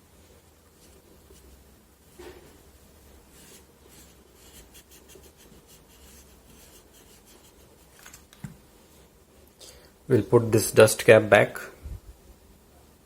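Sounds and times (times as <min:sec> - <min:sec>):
rubbing and scratching: 0:00.7 - 0:08.4.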